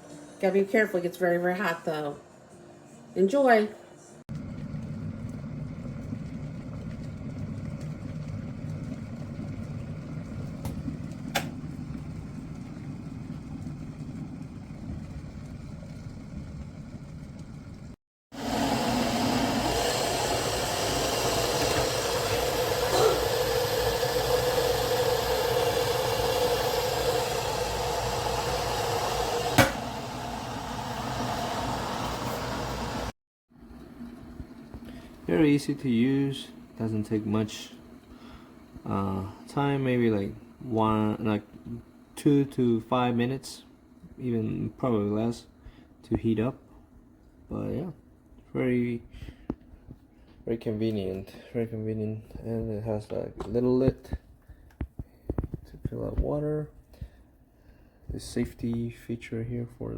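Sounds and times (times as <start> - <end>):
electric kettle heating water: 4.3 - 51.2.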